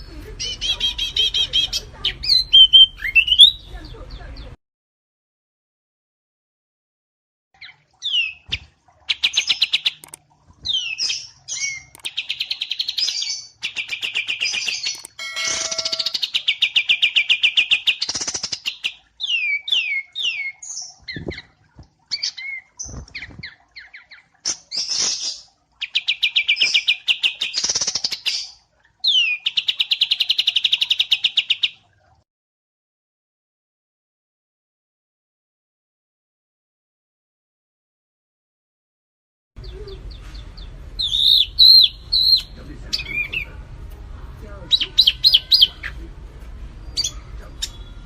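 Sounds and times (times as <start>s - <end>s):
songbirds trilling and whistling: 0.0s - 4.6s, 7.6s - 31.8s, 39.6s - 43.7s, 44.6s - 46.1s, 46.7s - 48.0s.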